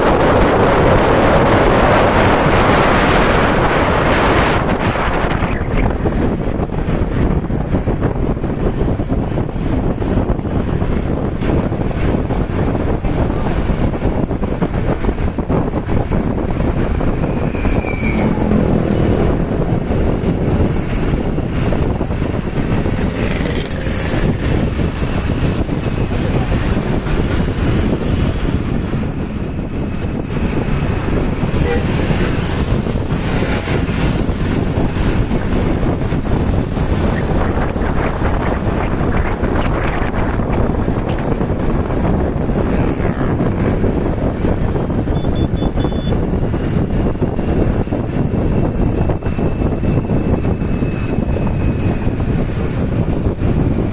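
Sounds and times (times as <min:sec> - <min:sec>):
road and engine rumble: 0:00.0 - 0:53.9
wind buffeting microphone: 0:00.0 - 0:53.9.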